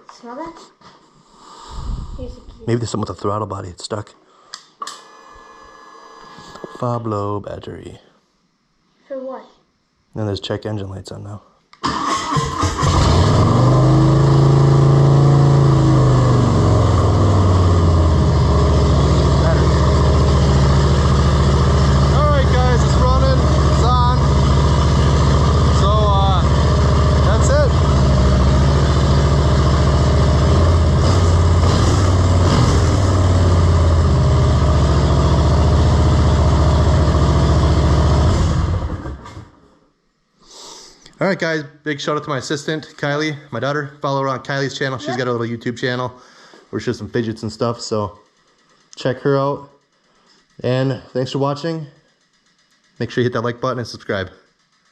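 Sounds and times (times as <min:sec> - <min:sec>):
motorcycle engine fast idle: 0:16.7 - 0:39.4.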